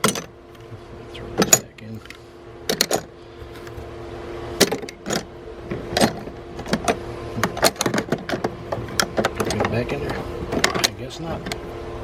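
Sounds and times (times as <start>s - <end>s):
metal tools clanking in drawer: 0.0s - 0.3s, 1.4s - 3.1s
steady low hum: 0.0s - 12.0s.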